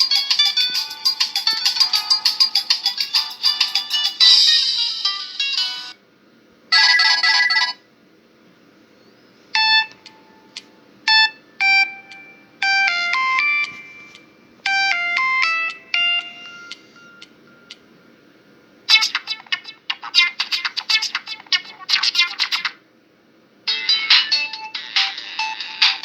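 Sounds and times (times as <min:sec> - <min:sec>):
sparse synthesized melody: 0:11.1 - 0:17.0
polyphonic phone jingle: 0:11.1 - 0:17.8.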